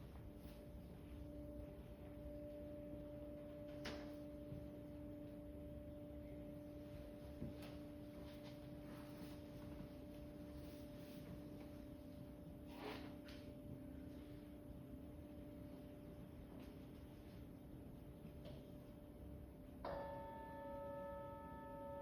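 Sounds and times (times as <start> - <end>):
crystal singing bowl ringing: 19.8 - 22.0.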